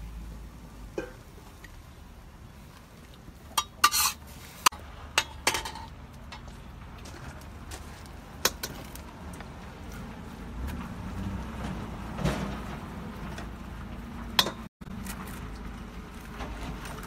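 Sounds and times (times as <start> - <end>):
metal utensil clinking on pan: 3.6 - 4.2.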